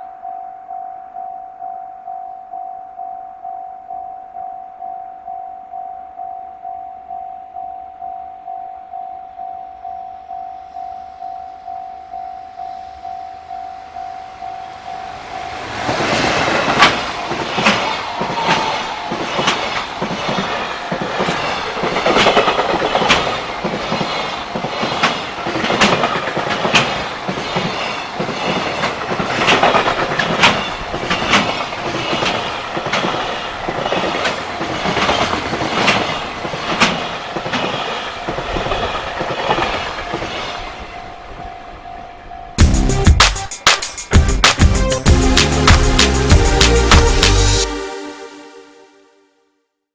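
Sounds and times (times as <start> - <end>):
train wheels clacking over rail joints: 15.8 - 40.8.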